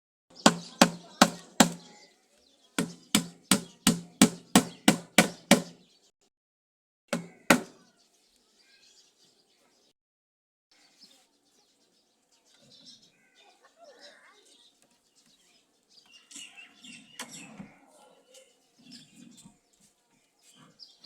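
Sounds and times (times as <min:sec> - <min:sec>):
hammer blows on wood: 0:00.3 - 0:01.9, 0:02.8 - 0:05.8, 0:07.1 - 0:07.8.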